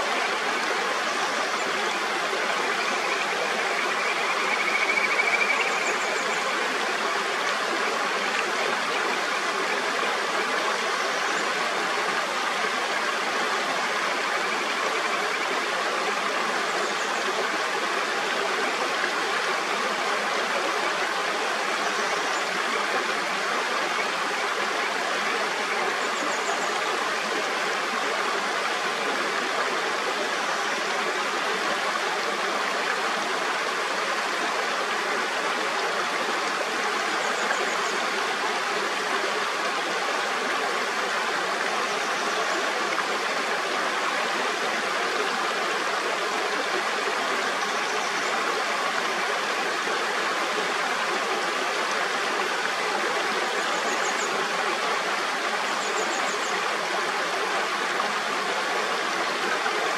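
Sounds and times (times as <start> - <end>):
stream flowing over rocks: 0.0 - 59.9.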